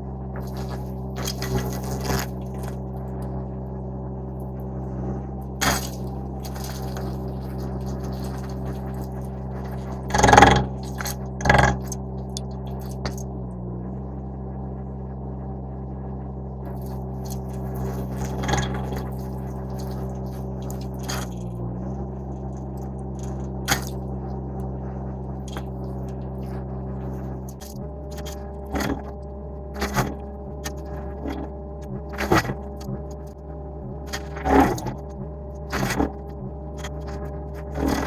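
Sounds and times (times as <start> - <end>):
skid steer engine running: 0.0 - 38.0
stump grinder cutting: 0.4 - 3.0, 5.6 - 13.2, 16.7 - 21.6, 22.4 - 24.1, 25.3 - 38.0
wood cracking: 5.6 - 13.2, 23.2 - 24.0.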